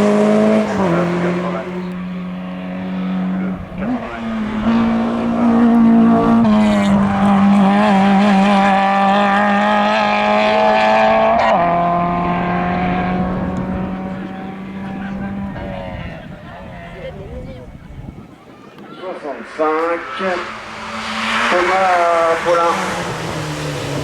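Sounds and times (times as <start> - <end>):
race car engine at high revs: 0.0 - 17.2, 19.2 - 24.0.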